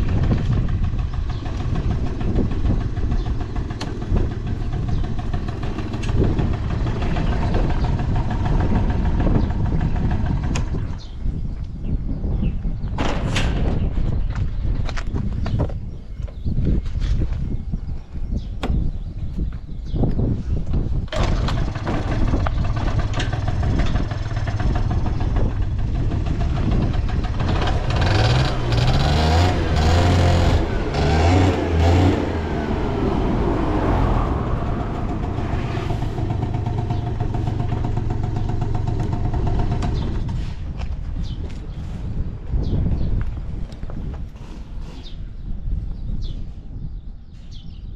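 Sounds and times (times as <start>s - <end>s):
scooter engine idling and revving: 0.0s - 11.8s, 20.7s - 43.1s.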